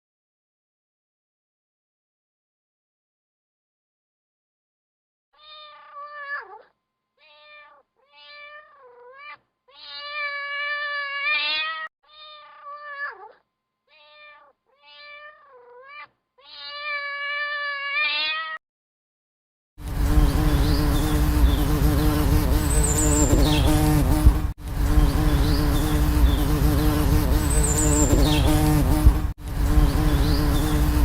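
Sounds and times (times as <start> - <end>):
cat meowing: 5.4 - 18.6.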